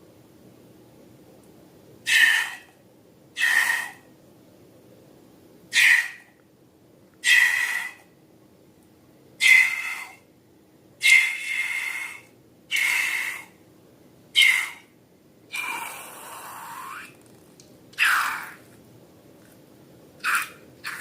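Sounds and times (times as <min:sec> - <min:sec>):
air squealing out of balloon: 0:03.4 - 0:04.0, 0:05.7 - 0:06.3, 0:14.4 - 0:14.8.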